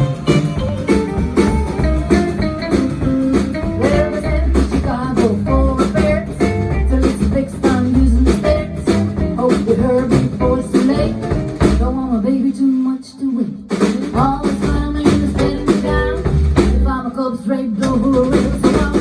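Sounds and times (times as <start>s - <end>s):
electric guitar lead: 0.0s - 7.1s
bass guitar: 0.0s - 12.4s, 13.7s - 17.1s, 17.8s - 19.0s
drums: 0.0s - 19.0s.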